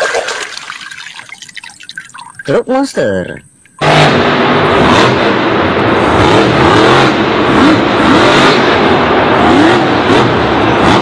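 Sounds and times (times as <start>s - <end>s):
engine revving loudly: 3.8s - 11.0s.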